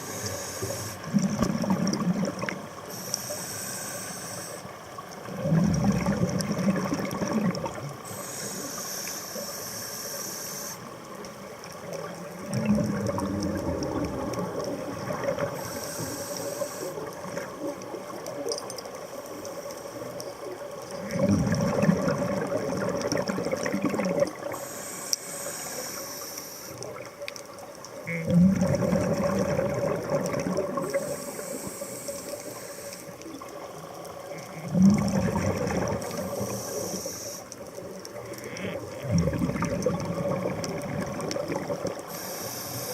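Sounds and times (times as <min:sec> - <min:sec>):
regulator inhalation hiss: 0:00.0 - 0:01.2, 0:02.8 - 0:04.8, 0:08.0 - 0:11.0, 0:15.5 - 0:17.1, 0:24.4 - 0:26.9, 0:30.9 - 0:33.3, 0:36.0 - 0:37.7, 0:42.0 - 0:42.9
diver exhaling bubbles underwater: 0:00.0 - 0:02.6, 0:05.2 - 0:08.0, 0:12.4 - 0:15.6, 0:21.0 - 0:24.6, 0:28.2 - 0:31.4, 0:34.5 - 0:36.8, 0:38.8 - 0:42.1.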